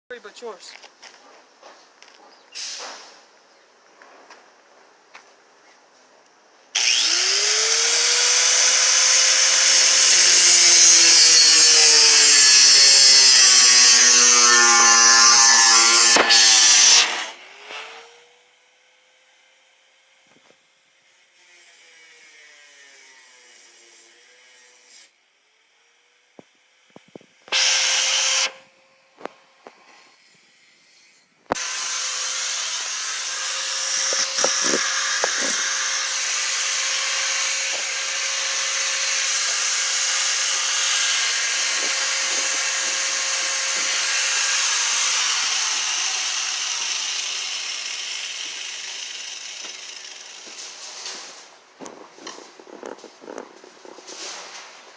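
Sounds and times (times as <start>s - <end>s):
angle grinder cutting: 6.8s - 18.2s, 27.5s - 29.3s, 30.2s - 52.4s.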